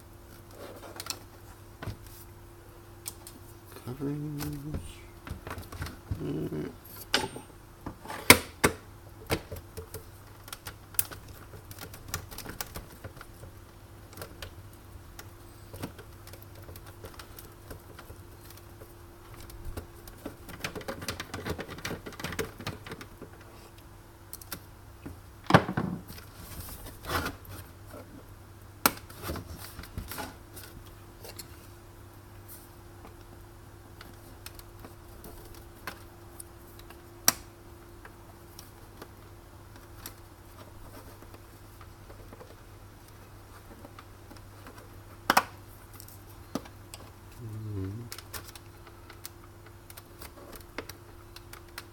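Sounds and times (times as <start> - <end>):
plastic parts clicking and clattering: 19.3 - 23.5.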